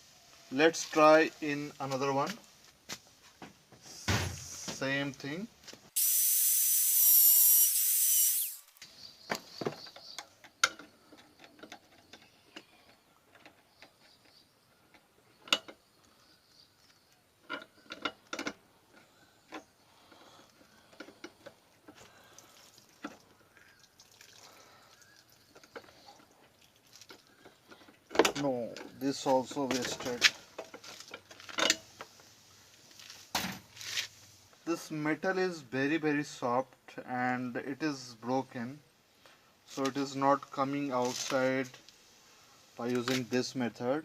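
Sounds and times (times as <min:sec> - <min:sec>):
high-pitched grinding hiss: 0:06.0 - 0:08.8.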